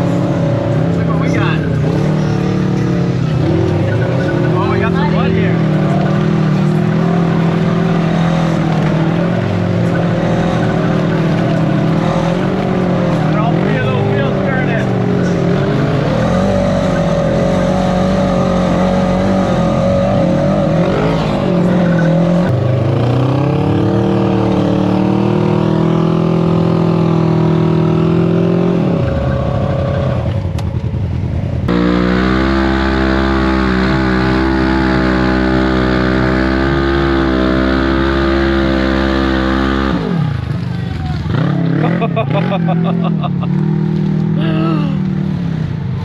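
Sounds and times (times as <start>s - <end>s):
off-road vehicle engine under load: 0.0s - 46.0s
steady engine note: 31.7s - 40.5s.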